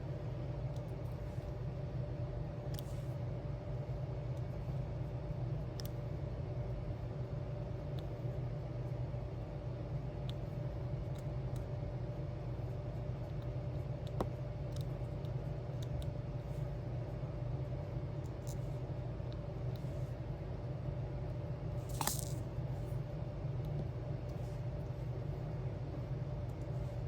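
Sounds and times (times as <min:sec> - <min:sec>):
steady low hum: 0:00.0 - 0:27.0
plastic beads clattering: 0:21.9 - 0:22.4
plastic beads clicking and rattling: 0:21.9 - 0:22.4.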